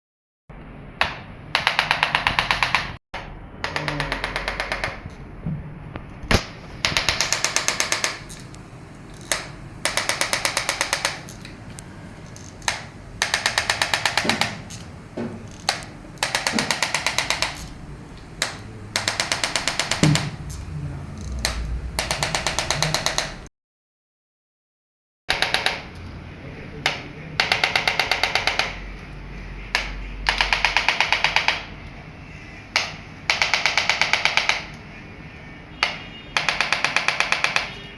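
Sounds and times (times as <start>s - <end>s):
sharp knocks: 12.7s - 17.6s, 18.4s - 20.6s.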